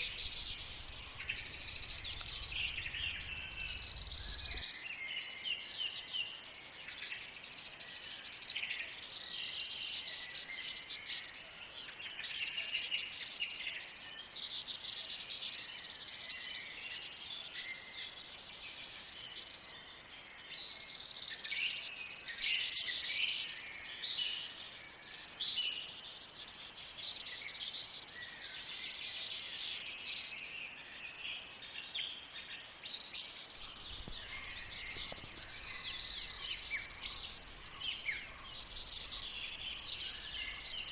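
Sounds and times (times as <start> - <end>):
birds chirping and singing: 0.0 - 4.6, 33.5 - 40.9.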